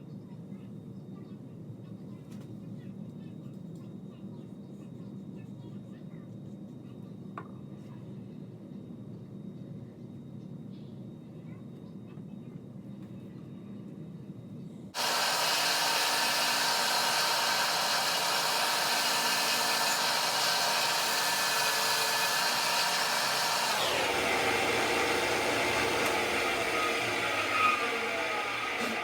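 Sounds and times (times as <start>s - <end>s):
belt sander motor whine: 15.0s - 29.0s.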